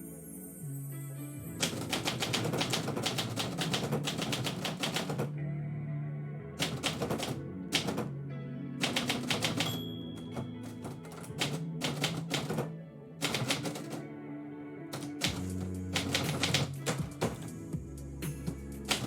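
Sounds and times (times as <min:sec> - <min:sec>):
background music: 0:00.0 - 0:19.0
rapid keyboard typing: 0:01.6 - 0:05.3, 0:06.6 - 0:08.1, 0:08.8 - 0:14.0, 0:15.0 - 0:17.5, 0:18.8 - 0:19.0.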